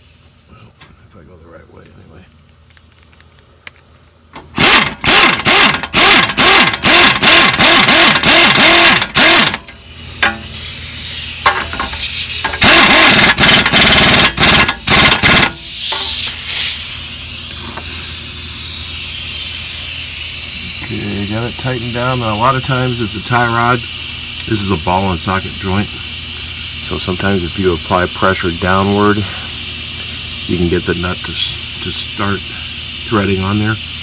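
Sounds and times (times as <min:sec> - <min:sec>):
pneumatic wrench hammering: 0:04.4 - 0:34.0
air hiss: 0:07.8 - 0:34.0.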